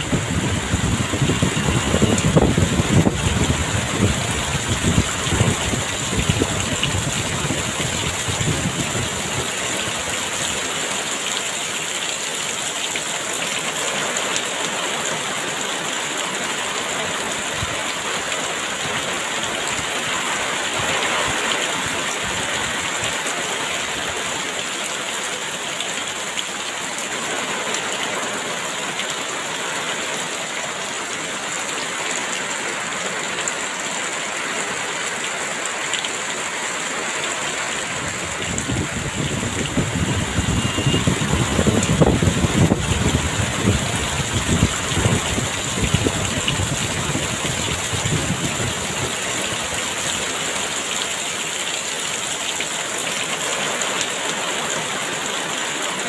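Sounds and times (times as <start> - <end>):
low rumble of wind gusts: 0.0 - 10.6, 37.9 - 50.4
heavy rain falling: 0.0 - 56.0.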